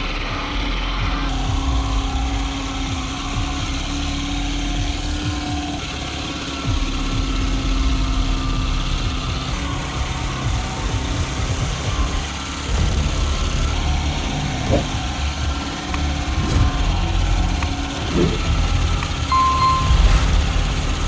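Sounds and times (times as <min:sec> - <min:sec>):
heavy machinery engine rumble: 0:12.7 - 0:21.0
low thumps: 0:12.7 - 0:21.0.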